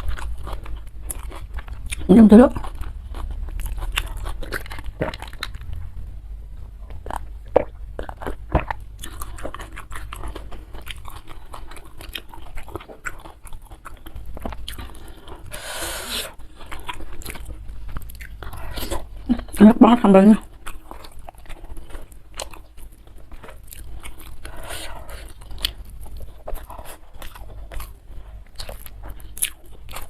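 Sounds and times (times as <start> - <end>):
chewing and crunching food: 0.0 - 30.0.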